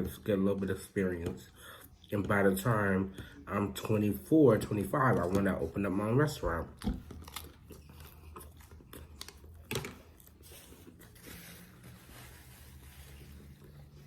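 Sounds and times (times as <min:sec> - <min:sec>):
person chewing food: 0:06.7 - 0:11.5.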